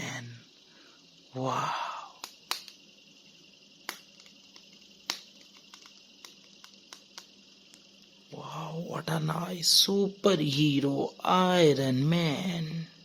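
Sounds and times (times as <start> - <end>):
faint steady hiss: 0.0 - 13.0
plastic figure clicks and taps: 2.2 - 2.8.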